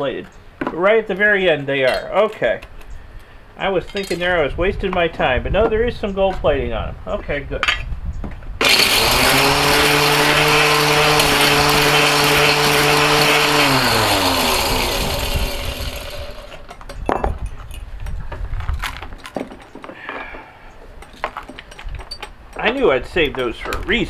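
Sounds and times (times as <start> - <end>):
ore crusher humming and rattling: 8.6 - 16.9
knocks and clatter of handling: 16.5 - 23.9.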